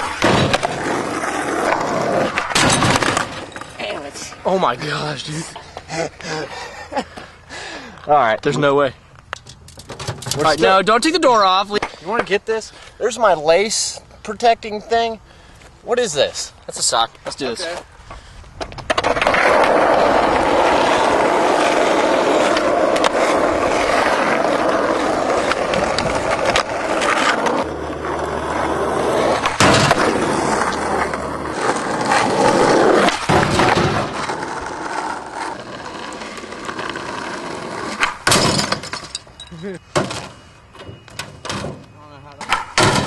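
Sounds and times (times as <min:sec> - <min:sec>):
skateboard striking: 0:00.0 - 0:04.0, 0:18.7 - 0:43.0
skateboard wheels rolling: 0:00.0 - 0:04.8, 0:18.5 - 0:39.1.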